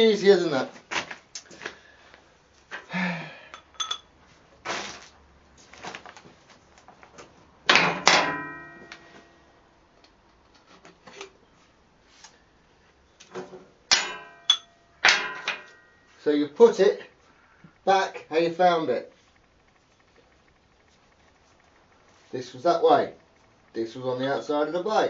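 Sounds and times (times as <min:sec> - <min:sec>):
metal tools knocking and clinking: 0:03.5 - 0:04.1, 0:13.9 - 0:16.0
loud ringing metallic clang: 0:07.7 - 0:09.4, 0:13.9 - 0:16.1.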